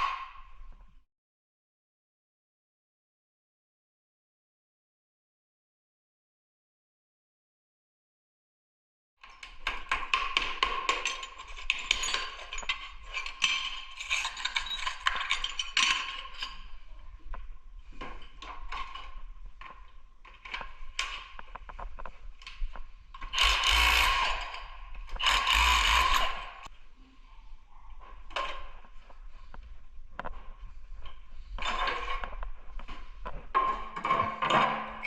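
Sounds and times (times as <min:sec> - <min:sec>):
hand tools clicking on tile: 0:18.4 - 0:26.7
tool scraping tile: 0:23.2 - 0:26.7.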